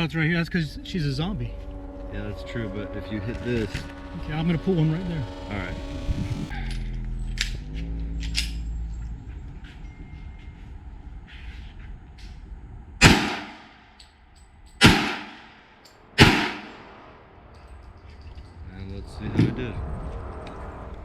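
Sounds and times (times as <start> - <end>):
pistol shots echoing: 13.0 - 13.7, 14.8 - 15.6, 16.2 - 17.0.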